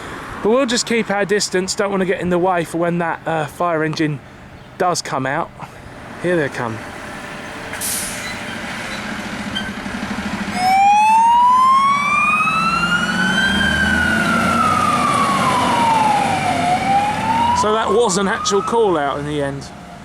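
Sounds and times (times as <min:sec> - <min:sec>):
fire engine engine running: 0:05.6 - 0:20.0
short hiss: 0:07.7 - 0:08.4
siren wailing: 0:10.5 - 0:20.0.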